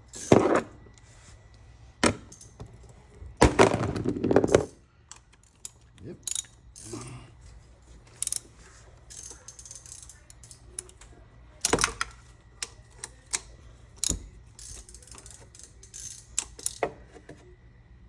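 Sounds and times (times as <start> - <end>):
ratchet wrench clicking: 2.3 - 2.6, 5.1 - 7.1, 8.1 - 16.9.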